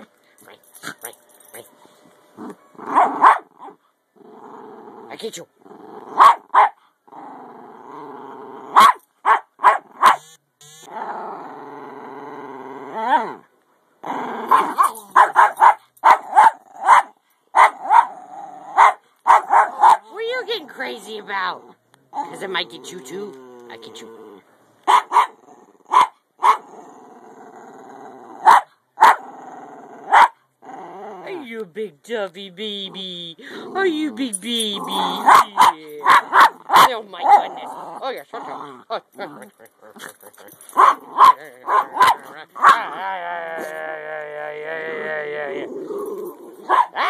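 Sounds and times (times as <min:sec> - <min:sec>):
dog play-growling: 0:02.4 - 0:03.3, 0:04.2 - 0:06.3, 0:07.1 - 0:08.8, 0:19.8 - 0:24.5, 0:33.0 - 0:47.0
dog barking sharply: 0:02.9 - 0:03.8, 0:06.2 - 0:06.8, 0:08.8 - 0:10.3, 0:14.5 - 0:18.1, 0:18.8 - 0:20.0, 0:24.9 - 0:26.6, 0:28.5 - 0:29.2, 0:30.1 - 0:30.4, 0:35.2 - 0:36.9, 0:46.7 - 0:47.0.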